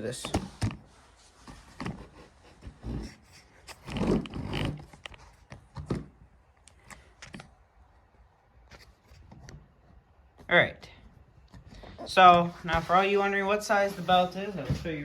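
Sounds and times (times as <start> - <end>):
rustling scrape: 0.5 - 5.5, 11.8 - 15.0.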